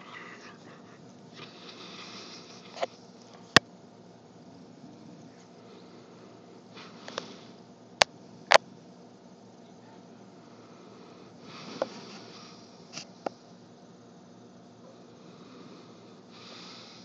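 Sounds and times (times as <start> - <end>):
dog breathing noisily: 0.0 - 3.0.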